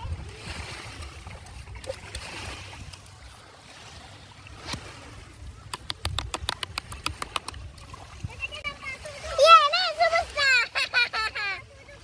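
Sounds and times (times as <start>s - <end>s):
wind rumble on microphone: 0.0s - 3.4s
water ambience: 0.0s - 12.0s
sharp clicks or small splashes: 5.7s - 8.1s.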